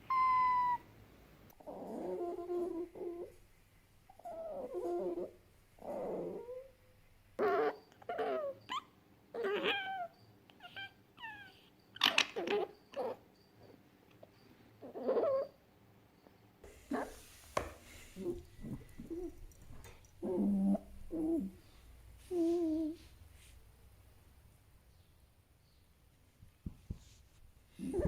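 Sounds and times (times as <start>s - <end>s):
fox whines and squeaks: 0.0s - 0.8s, 1.6s - 3.3s, 4.1s - 6.7s, 7.4s - 13.7s, 14.8s - 15.6s, 20.2s - 21.6s, 27.7s - 28.0s.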